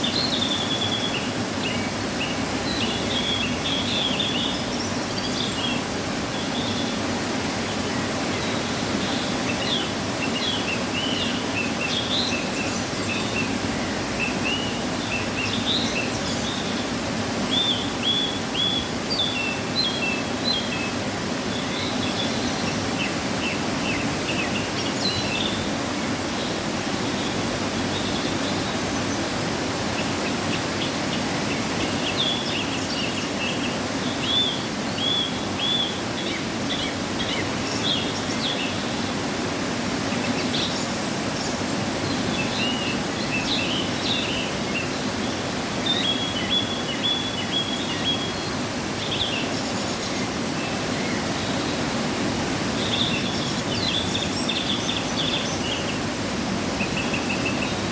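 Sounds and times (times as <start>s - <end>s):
waterfall rushing: 0.0s - 57.9s
small birds chirping: 7.6s - 57.9s.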